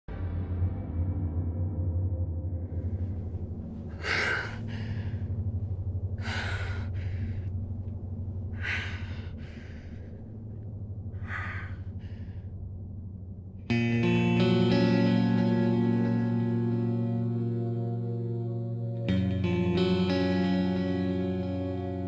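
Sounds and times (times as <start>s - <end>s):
low pulsing drone: 0.1s - 22.0s
heavy human breathing: 2.8s - 13.3s.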